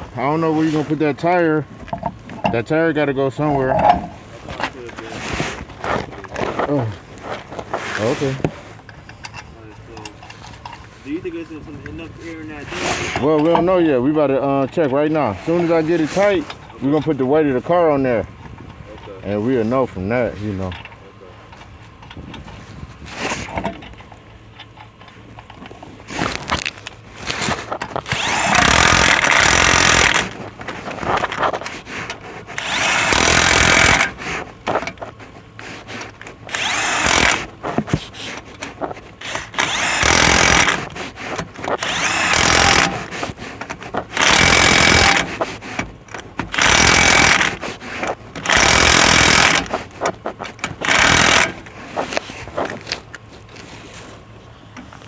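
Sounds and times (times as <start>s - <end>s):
rattling: 1.1s - 5.1s, 23.4s - 35.4s, 36.0s - 53.2s
power tool tightening lug nuts: 3.4s - 4.2s, 27.3s - 30.4s, 31.1s - 35.0s, 35.8s - 52.4s.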